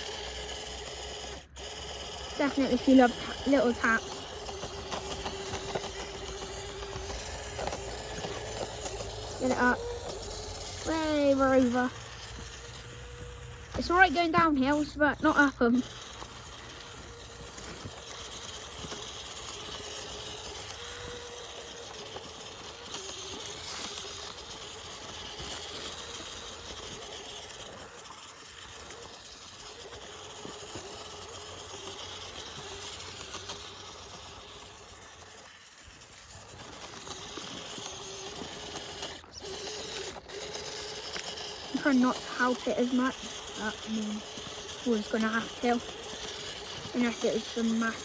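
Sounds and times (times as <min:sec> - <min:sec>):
electric motor whining: 0:00.0 - 0:48.0
small gear clicks: 0:00.0 - 0:48.0.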